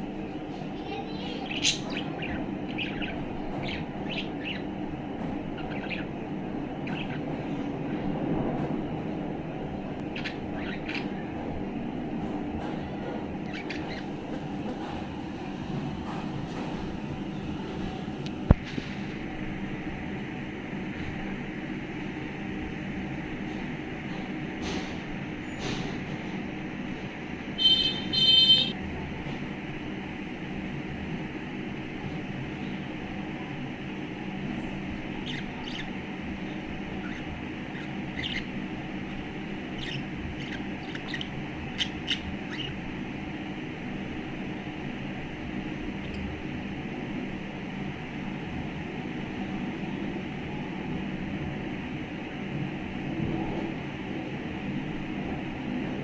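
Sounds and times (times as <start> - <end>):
budgerigar chirping: 27.6 - 28.7, 35.2 - 35.9, 37.0 - 38.5, 39.7 - 42.8.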